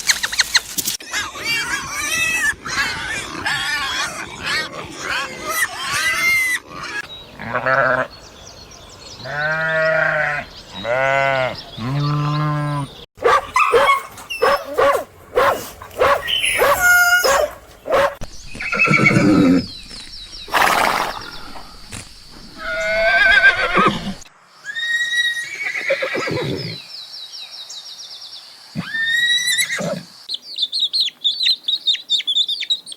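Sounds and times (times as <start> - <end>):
farm animals calling: 1.1 - 8.4, 9.2 - 21.5.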